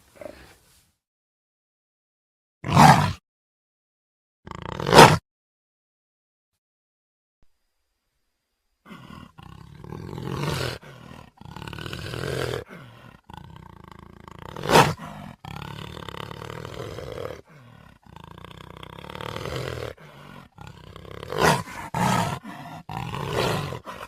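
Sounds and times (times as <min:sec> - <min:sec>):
cougar harsh calls: 0:08.9 - 0:24.0.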